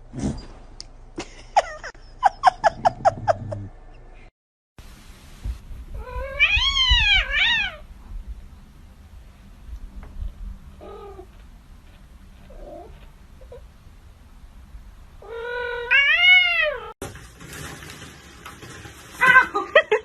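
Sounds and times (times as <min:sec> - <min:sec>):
cat meowing: 0:06.0 - 0:07.8, 0:15.2 - 0:16.9.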